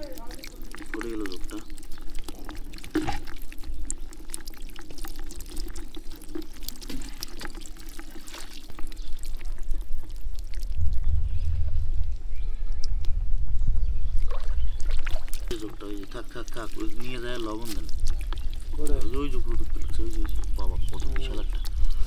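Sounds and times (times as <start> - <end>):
water pouring and trickling: 0.0 - 12.2, 14.2 - 22.0
low rumble: 10.2 - 15.3.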